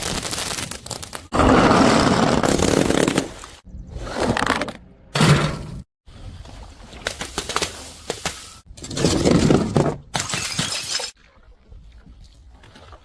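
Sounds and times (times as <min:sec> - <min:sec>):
objects being smashed and crushed: 0:08.8 - 0:11.2.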